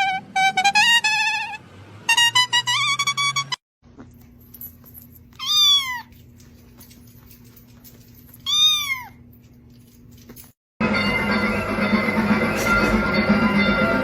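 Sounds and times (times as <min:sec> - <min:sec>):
cat meowing: 0:05.4 - 0:06.2, 0:08.4 - 0:09.2
music: 0:10.8 - 0:14.0.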